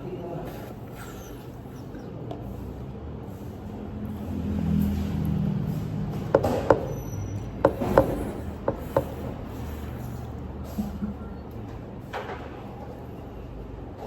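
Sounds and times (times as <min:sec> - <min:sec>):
vehicle passing rumble: 0:02.2 - 0:12.0.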